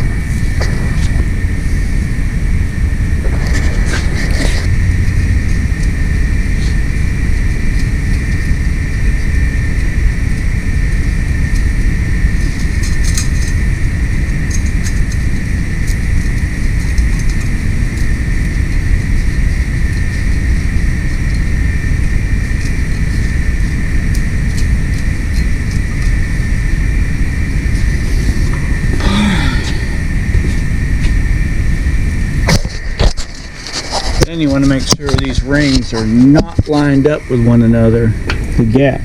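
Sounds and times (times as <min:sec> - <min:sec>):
machinery rumble and whine: 0:00.0 - 0:39.0.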